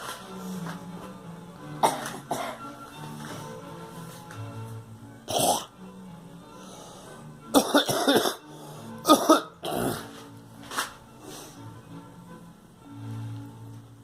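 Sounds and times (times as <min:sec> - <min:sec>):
girl coughing: 0:01.8 - 0:02.6, 0:05.3 - 0:05.7, 0:07.6 - 0:08.4, 0:09.1 - 0:10.0.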